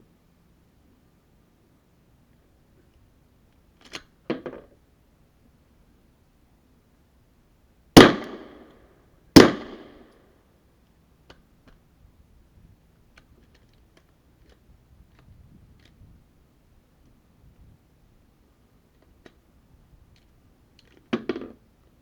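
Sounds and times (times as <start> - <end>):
suppressed pistol shots: 8.0 - 8.8, 9.4 - 10.1.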